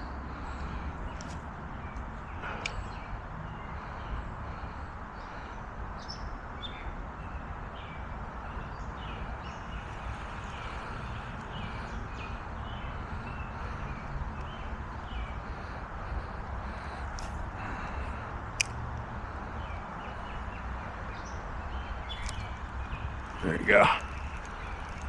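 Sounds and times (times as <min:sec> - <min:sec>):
birds chirping: 0:00.0 - 0:25.0
sharp clicks: 0:16.9 - 0:17.5, 0:18.6 - 0:19.1, 0:22.1 - 0:25.0.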